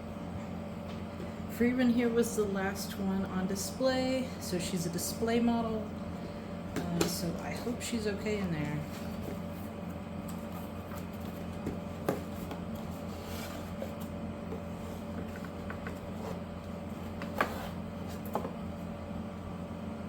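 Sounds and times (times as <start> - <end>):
low room hum: 0.0 - 20.0.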